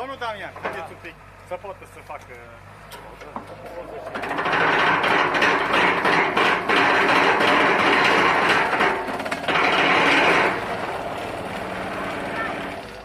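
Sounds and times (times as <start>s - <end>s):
excavator engine and hydraulics drone: 0.0s - 13.0s
pile driver harsh rattle: 3.0s - 12.8s.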